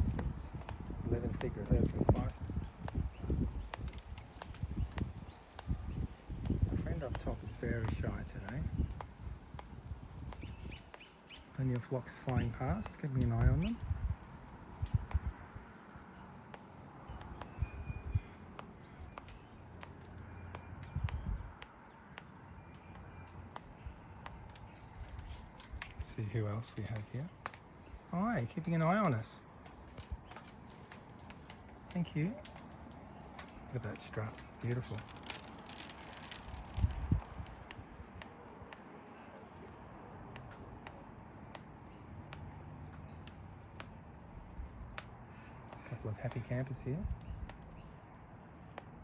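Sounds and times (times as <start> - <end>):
birds cracking seed with beaks: 0.0 - 49.0
bird chirps and squeaks: 10.3 - 12.6.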